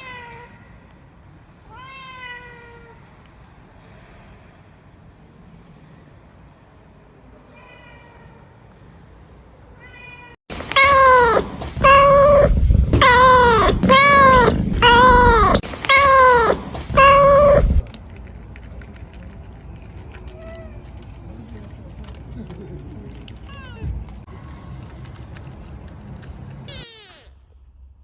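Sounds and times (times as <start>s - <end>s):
kittens meowing: 10.8s - 17.8s.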